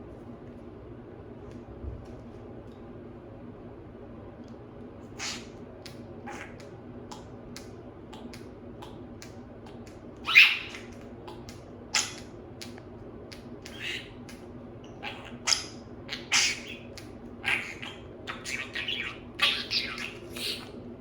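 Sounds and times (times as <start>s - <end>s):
budgerigar chirping and squawking: 5.2s - 5.5s, 10.2s - 10.9s, 11.9s - 12.3s, 13.7s - 14.2s, 15.0s - 20.7s.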